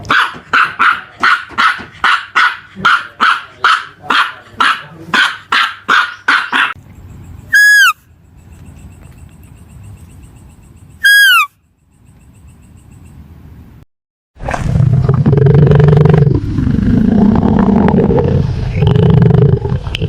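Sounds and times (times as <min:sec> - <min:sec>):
dog barking rapidly: 0:00.0 - 0:06.8
high whistled animal calls: 0:07.5 - 0:08.1, 0:11.0 - 0:11.6.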